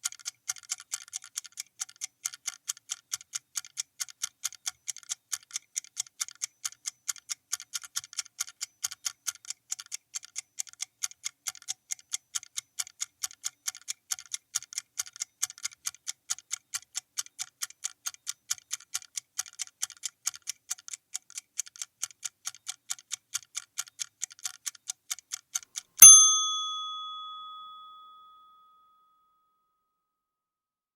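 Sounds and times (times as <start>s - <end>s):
clock ticking fast: 0.0s - 25.9s
alarm bell strike: 26.0s - 28.7s.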